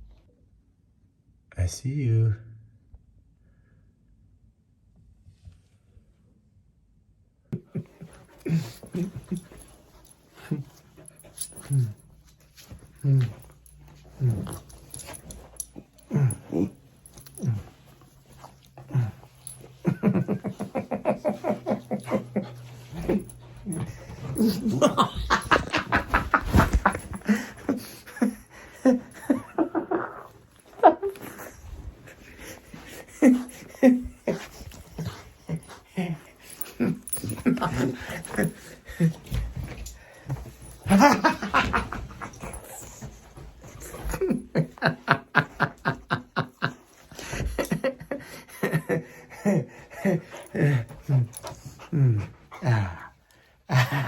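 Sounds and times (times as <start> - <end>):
person laughing: 7.6 - 9.6, 19.8 - 31.6, 32.4 - 39.8, 40.6 - 42.9, 43.7 - 51.3.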